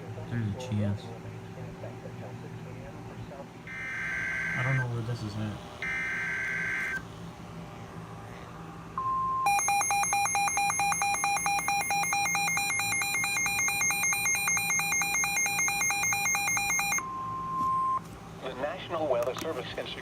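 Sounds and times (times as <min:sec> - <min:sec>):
harsh rapid electronic beeping: 0:03.7 - 0:04.8, 0:09.5 - 0:17.0
steady high attention tone: 0:03.7 - 0:05.0, 0:05.8 - 0:07.0, 0:09.0 - 0:18.1.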